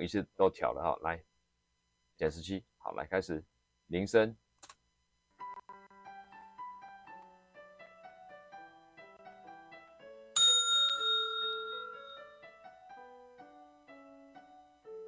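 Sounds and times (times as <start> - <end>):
soft piano background music: 5.4 - 15.0
bell strike ringing: 10.4 - 12.5.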